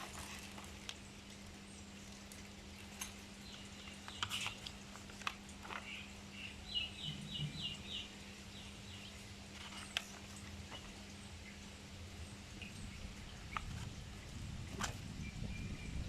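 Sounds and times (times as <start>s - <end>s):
faint low hum: 0.0s - 16.0s
small bird chirping: 5.7s - 11.7s, 12.6s - 16.0s.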